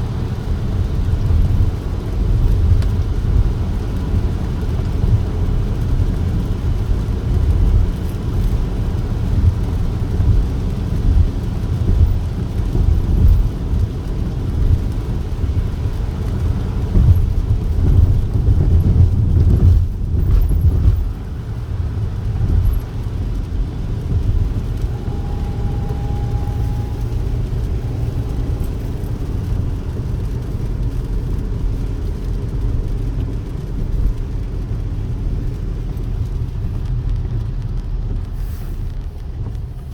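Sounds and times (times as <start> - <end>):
car road and engine rumble: 0.0 - 39.9
brief high tone: 24.8 - 28.4.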